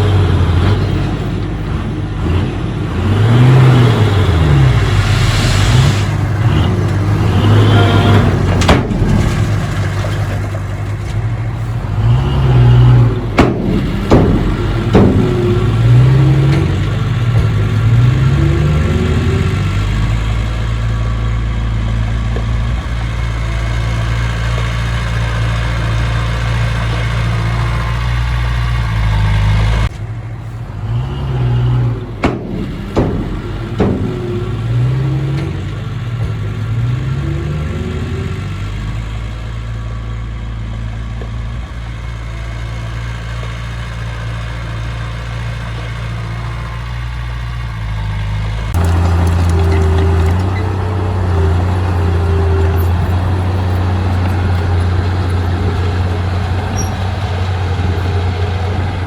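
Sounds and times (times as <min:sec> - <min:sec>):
heavy diesel engine revving: 0:00.0 - 0:40.9, 0:41.5 - 0:59.0
sharp knocks: 0:13.4 - 0:18.3, 0:32.2 - 0:37.0.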